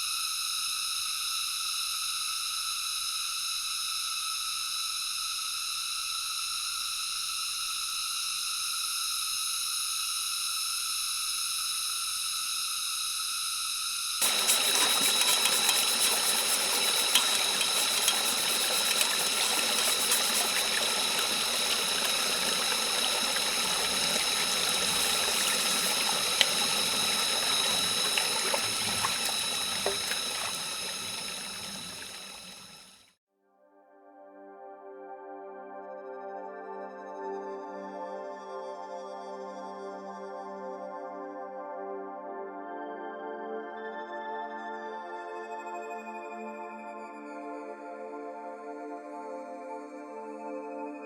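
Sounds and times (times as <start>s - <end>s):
scattered ticks: 14.2s - 32.7s
rushing water-like noise: 14.2s - 33.0s.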